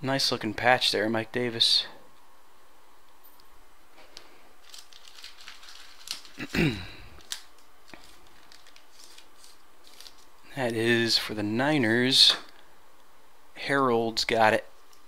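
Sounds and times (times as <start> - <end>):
trading cards clicking and rustling: 4.2 - 10.4.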